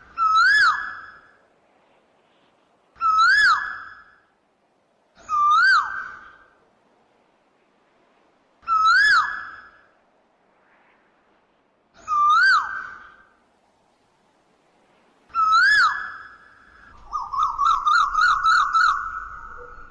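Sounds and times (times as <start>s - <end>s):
koel whistled calls: 8.6s - 9.9s, 12.0s - 13.4s, 15.3s - 19.9s.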